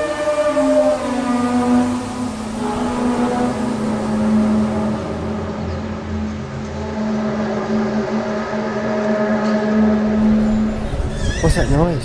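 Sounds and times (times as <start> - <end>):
horn-like drone: 0.0 - 12.0
low rumble: 10.1 - 12.0.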